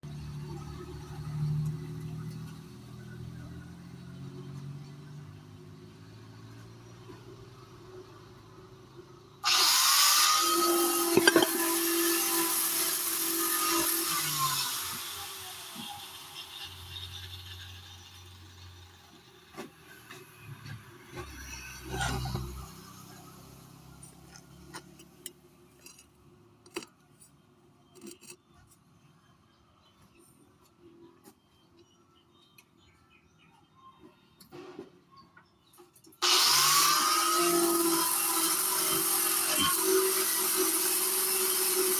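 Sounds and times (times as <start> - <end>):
angle grinder whining: 9.4 - 18.3, 36.2 - 41.9.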